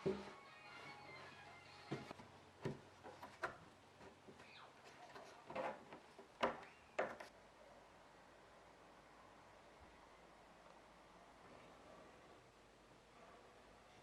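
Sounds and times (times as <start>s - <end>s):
light wooden knocks and clicks: 1.9s - 7.3s.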